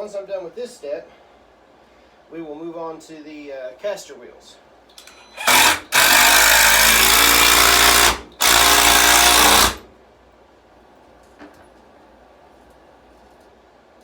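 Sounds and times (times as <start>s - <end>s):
power drill into wood: 5.0s - 9.9s.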